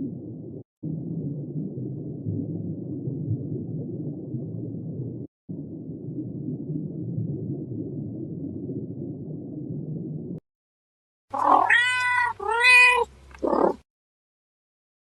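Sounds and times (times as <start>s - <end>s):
low rumble: 0.0s - 10.4s
cat meowing: 11.4s - 13.8s.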